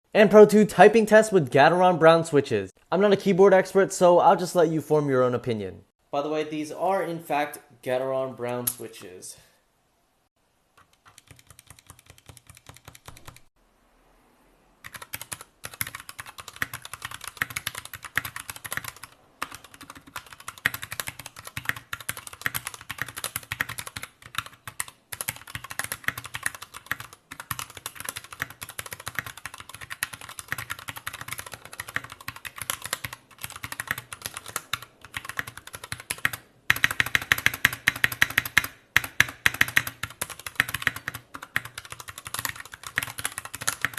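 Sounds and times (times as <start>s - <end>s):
fast mechanical keyboard typing: 10.8s - 13.5s, 14.8s - 43.9s.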